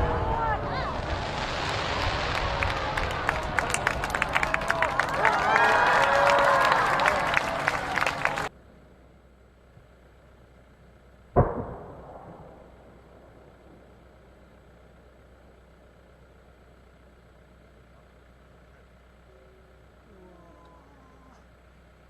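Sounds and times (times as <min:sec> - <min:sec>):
firework boom: 0:00.0 - 0:04.9, 0:11.3 - 0:14.2
rolling echo: 0:11.3 - 0:15.8.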